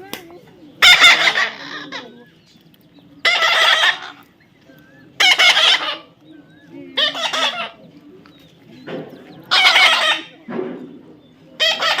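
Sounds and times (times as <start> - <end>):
parrot screeching: 3.2 - 4.2, 5.2 - 6.0, 9.5 - 10.3, 11.6 - 12.0.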